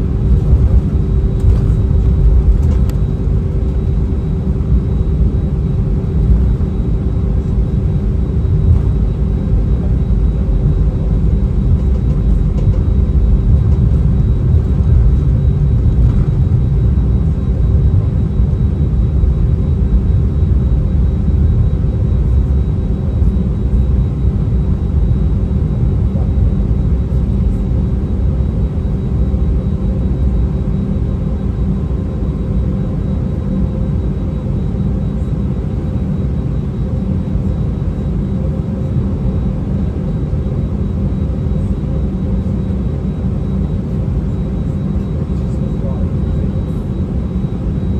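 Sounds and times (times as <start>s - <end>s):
steady hum: 0.0s - 21.6s
jet engine and airflow rumble: 0.0s - 47.9s.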